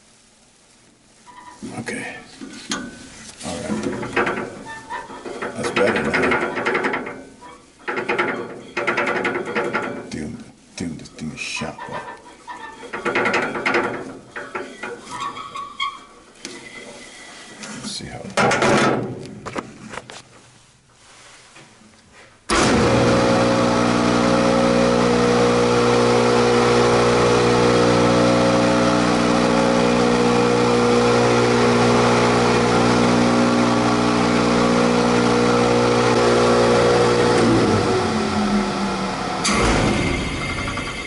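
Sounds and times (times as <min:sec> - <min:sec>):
loud noise: 0:22.5 - 0:24.0, 0:35.4 - 0:41.0
blower motor humming: 0:22.5 - 0:41.0.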